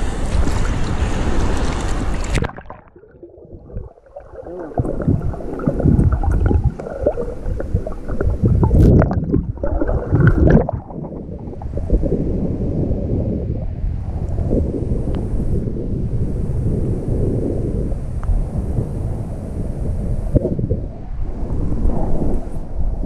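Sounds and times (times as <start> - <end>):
sea waves: 0.0 - 12.9
underwater gurgling and sloshing: 0.0 - 23.0
wind on microphone: 0.0 - 23.0.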